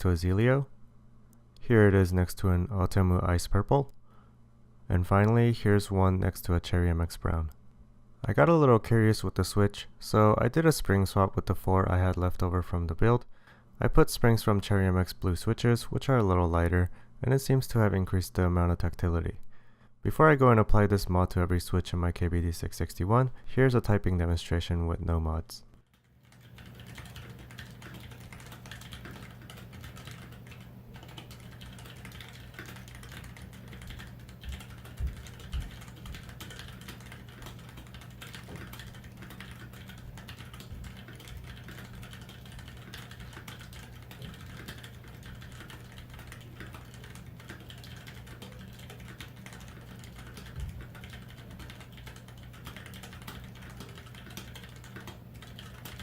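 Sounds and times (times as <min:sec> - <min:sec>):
faint low hum: 0:00.0 - 0:56.0
mechanical keyboard typing: 0:25.9 - 0:56.0.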